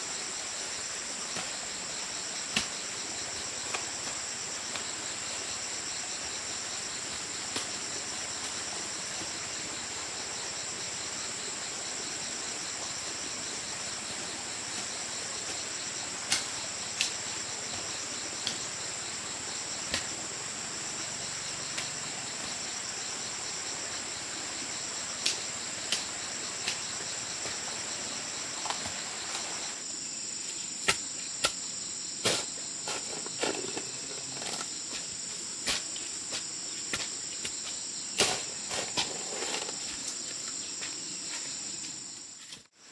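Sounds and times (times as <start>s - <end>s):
insects chirring: 0.0s - 42.9s.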